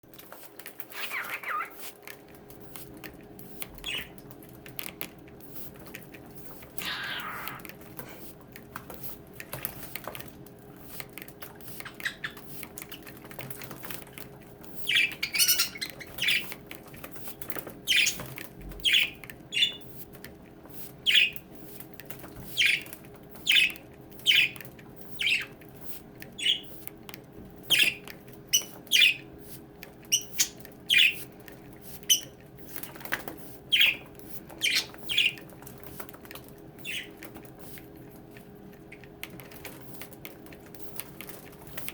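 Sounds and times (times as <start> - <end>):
budgerigars chirping: 3.8 - 4.1, 6.8 - 7.6, 11.8 - 12.4, 14.8 - 16.5, 17.9 - 18.2, 18.8 - 19.8, 21.1 - 21.4, 22.6 - 24.6, 25.2 - 25.5, 26.4 - 26.7, 27.7 - 29.3, 30.1 - 31.2, 33.7 - 34.0, 34.6 - 35.4, 36.8 - 37.2.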